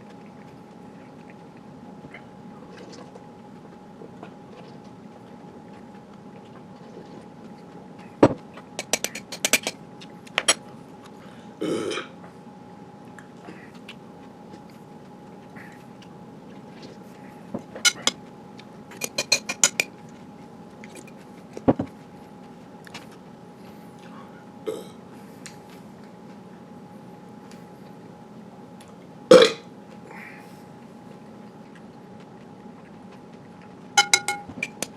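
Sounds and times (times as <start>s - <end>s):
short burp: 11.6s - 12.2s, 29.3s - 29.7s
spoon clinking against bowl: 34.0s - 34.6s.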